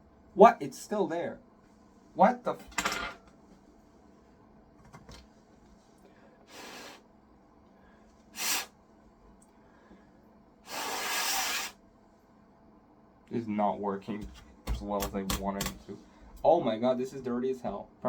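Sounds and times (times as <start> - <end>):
puffs of air blown: 6.4 - 7.1, 8.2 - 8.8, 10.6 - 11.8.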